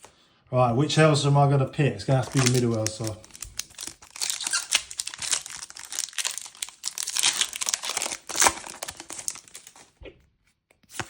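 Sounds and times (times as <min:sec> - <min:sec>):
plastic wrapper crinkling and tearing: 0:02.1 - 0:10.0.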